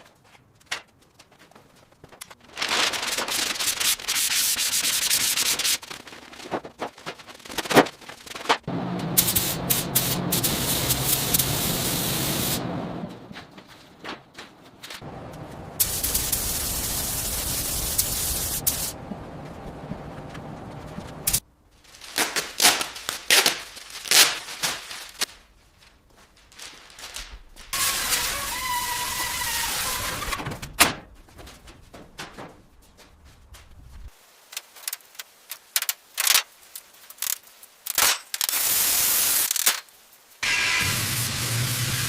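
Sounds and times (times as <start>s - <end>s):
hissing: 15.8s - 19.0s.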